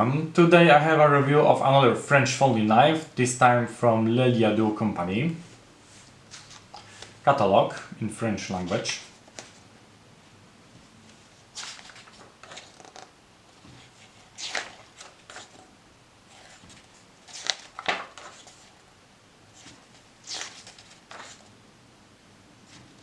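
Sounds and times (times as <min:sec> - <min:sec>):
paper pages rustling: 0:05.9 - 0:09.7, 0:10.8 - 0:15.7, 0:16.3 - 0:18.8, 0:19.5 - 0:21.5.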